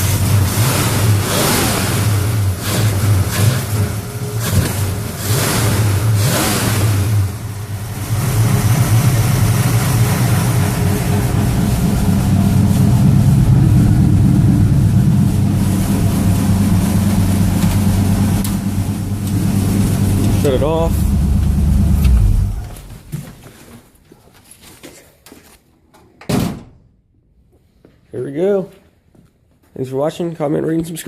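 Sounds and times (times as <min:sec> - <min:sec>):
car engine running: 0:00.0 - 0:23.3.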